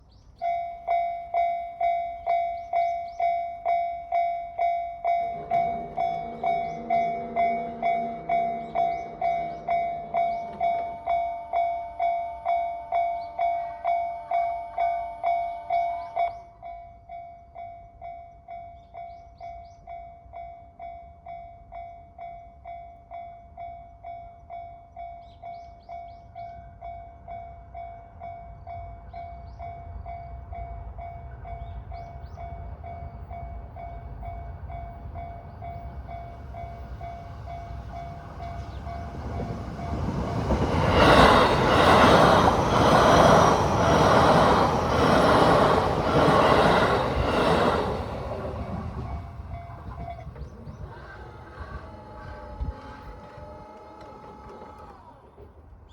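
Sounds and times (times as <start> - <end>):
train rumble: 0.0 - 16.4, 29.0 - 55.9
level-crossing alarm ringing: 0.6 - 16.4, 33.0 - 55.1.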